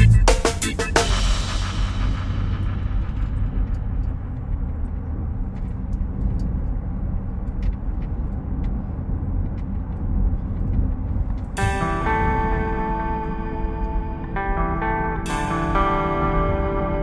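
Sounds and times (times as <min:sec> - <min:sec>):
music with plucked guitar: 0:00.0 - 0:01.2, 0:11.6 - 0:17.0
tyre and road noise: 0:00.0 - 0:17.0.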